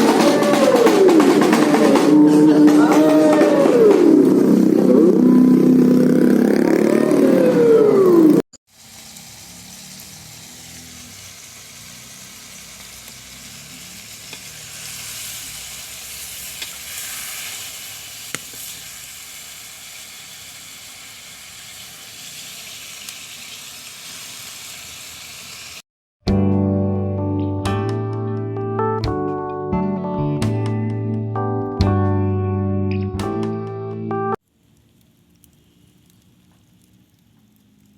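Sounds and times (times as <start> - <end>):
steady rain hiss: 8.7 - 25.8, 34.4 - 37.9.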